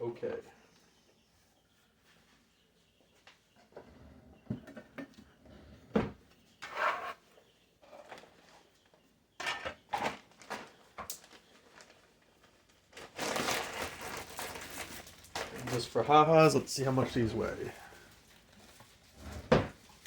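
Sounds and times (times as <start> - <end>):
kitchen knocks and clunks: 5.9 - 6.2, 19.5 - 19.8
rustling: 9.9 - 20.0.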